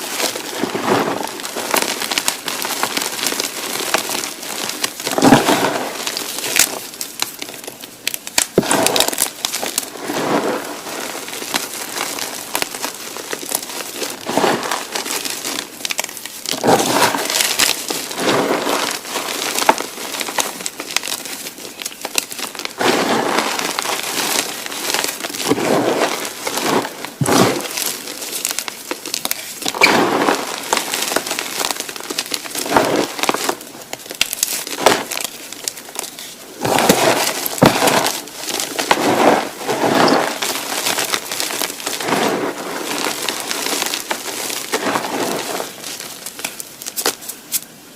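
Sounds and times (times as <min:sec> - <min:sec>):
chalk crushed by hand: 0:00.0 - 0:07.6, 0:08.2 - 0:47.7
chalk pieces cracking: 0:11.2 - 0:47.7.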